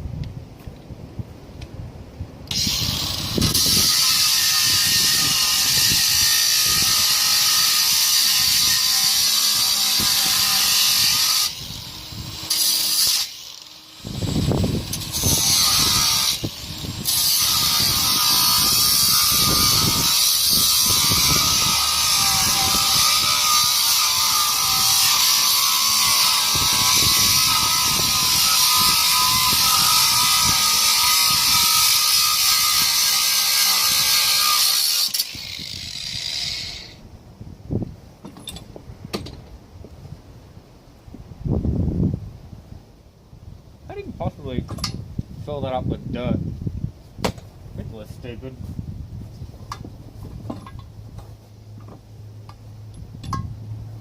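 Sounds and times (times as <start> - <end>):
angle grinder cutting metal: 2.5 - 37.0.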